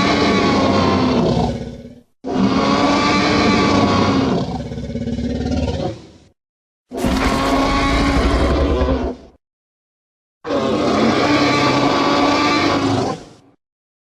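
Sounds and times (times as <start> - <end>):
dinosaur roar: 6.9 - 9.4.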